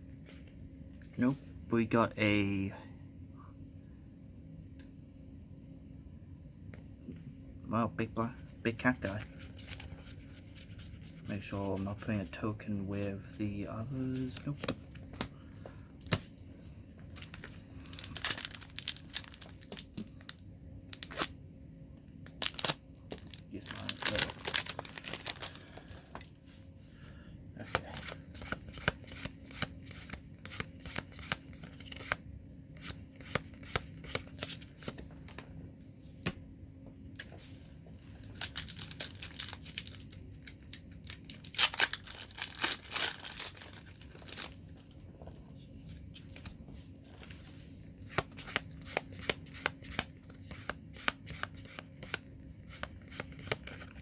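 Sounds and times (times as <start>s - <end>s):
foil wrapper tearing and crinkling: 17.2s - 21.3s, 22.3s - 26.0s, 38.2s - 44.6s
cards flicked and shuffled: 27.6s - 32.2s, 32.8s - 35.5s, 48.0s - 54.0s.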